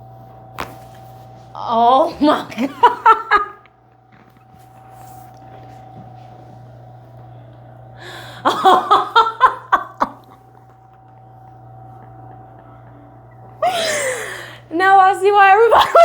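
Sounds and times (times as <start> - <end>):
woman laughing: 2.2 - 3.7, 8.4 - 10.9, 12.1 - 14.6, 15.6 - 16.0.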